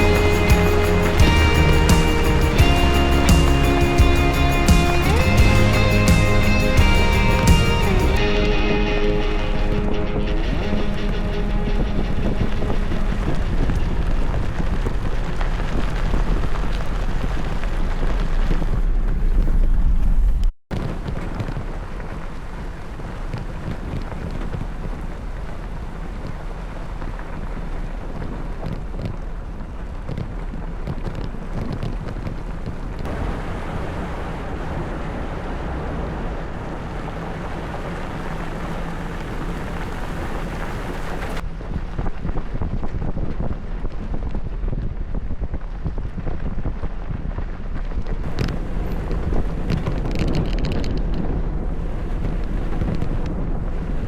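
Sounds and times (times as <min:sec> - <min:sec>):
vehicle driving rumble: 0:00.0 - 0:08.2
wind buffeting microphone: 0:09.7 - 0:54.0.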